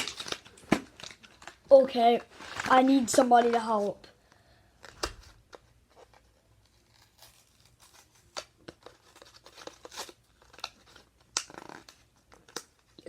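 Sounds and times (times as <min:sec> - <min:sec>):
plastic packaging crinkling: 0:00.0 - 0:03.9.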